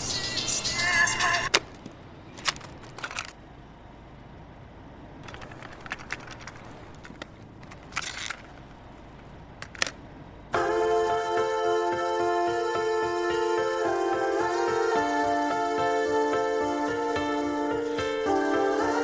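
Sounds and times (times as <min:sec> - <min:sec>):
crackles and clicks: 0:05.2 - 0:10.0.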